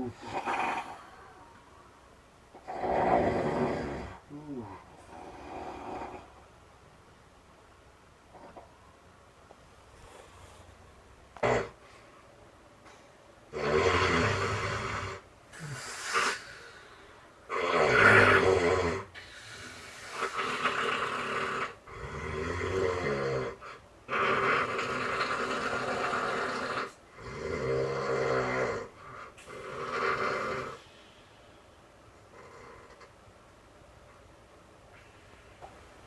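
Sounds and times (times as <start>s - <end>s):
man snoring: 0.0s - 1.0s, 2.6s - 6.3s, 11.4s - 11.8s, 13.5s - 16.8s, 17.5s - 30.8s.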